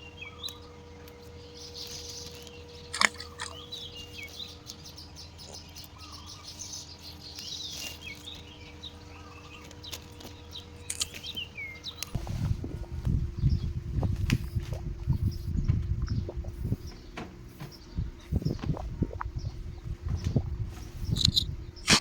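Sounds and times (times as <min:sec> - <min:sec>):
bird chirping: 0:00.0 - 0:22.0
faint hum: 0:00.0 - 0:22.0
sharp clicks: 0:02.9 - 0:03.6, 0:09.8 - 0:11.4, 0:21.1 - 0:22.0.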